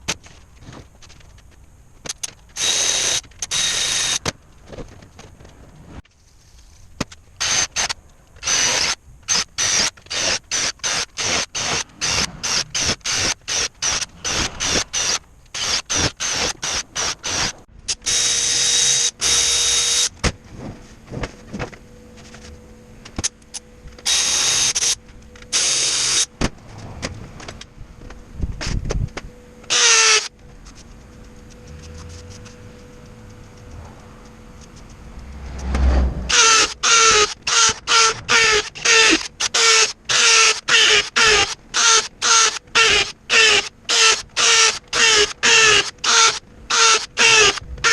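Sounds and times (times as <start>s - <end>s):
power tool running: 2.6s - 4.3s, 7.4s - 20.2s, 23.9s - 26.4s, 29.6s - 30.8s, 31.4s - 47.9s.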